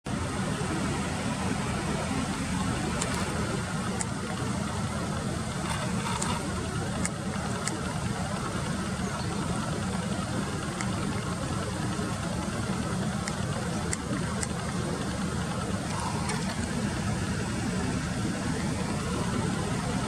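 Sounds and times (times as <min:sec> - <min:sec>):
low rumbling background noise: 0:00.1 - 0:20.0
faint high ticks: 0:03.9 - 0:04.4, 0:05.6 - 0:08.0, 0:10.6 - 0:11.4, 0:13.1 - 0:15.2.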